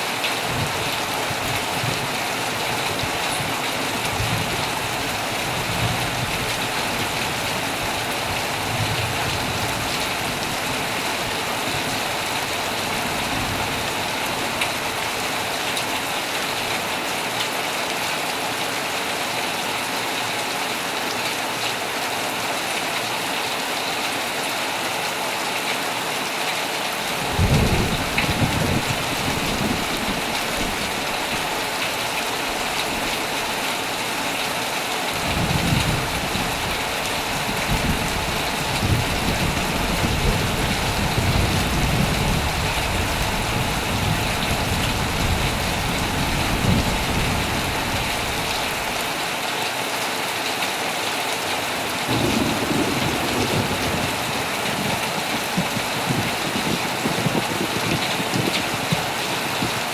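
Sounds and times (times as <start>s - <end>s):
heavy rain on a tent: 0.0s - 59.9s
thunder rumbling: 27.3s - 31.7s, 35.3s - 49.0s, 52.1s - 59.9s.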